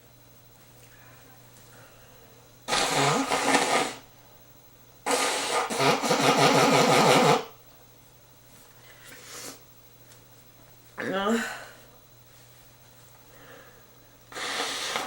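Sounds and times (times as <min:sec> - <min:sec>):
man blowing nose: 0:02.7 - 0:04.1, 0:05.0 - 0:07.5, 0:14.3 - 0:15.0.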